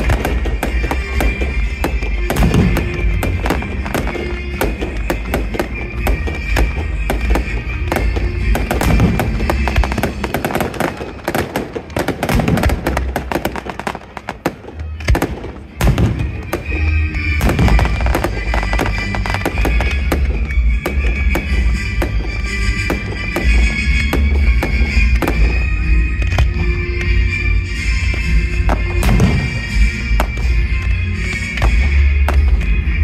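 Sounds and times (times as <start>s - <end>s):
fireworks bangs and crackles: 0.0s - 33.0s
loud music: 0.0s - 33.0s.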